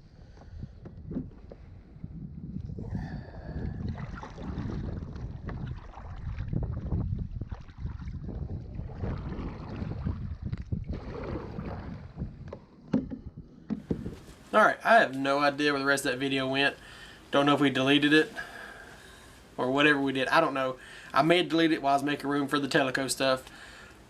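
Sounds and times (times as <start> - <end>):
wind rumbling on microphone: 0.0 - 14.4.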